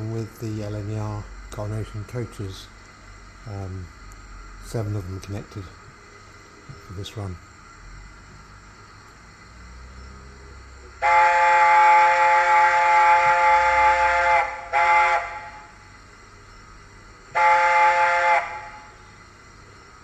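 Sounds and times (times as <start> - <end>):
locomotive chime whistle: 11.0 - 15.8, 17.3 - 19.0.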